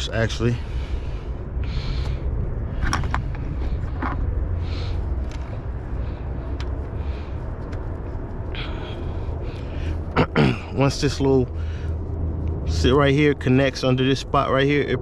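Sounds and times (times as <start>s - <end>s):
low rumble: 0.0s - 15.0s
hose fitting clicks and rustles: 2.8s - 4.3s.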